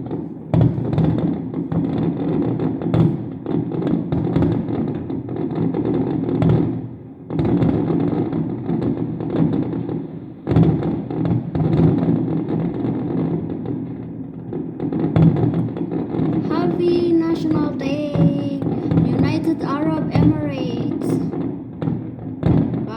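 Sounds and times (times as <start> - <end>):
fireworks thuds and bursts: 0.0 - 22.9
fireworks crackle: 14.5 - 22.9.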